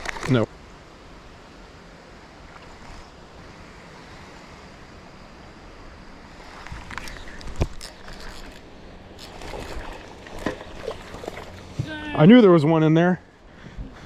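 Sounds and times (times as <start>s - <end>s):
water noise: 0.0s - 14.0s
faint clicks and rustles: 6.5s - 11.9s.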